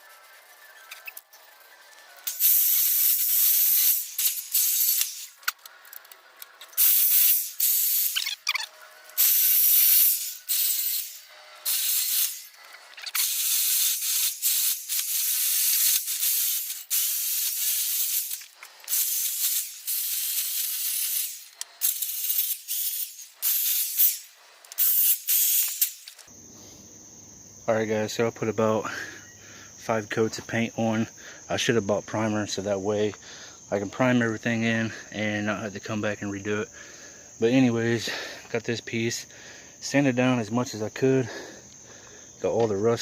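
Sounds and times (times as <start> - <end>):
spray paint can hissing: 2.2 - 26.3.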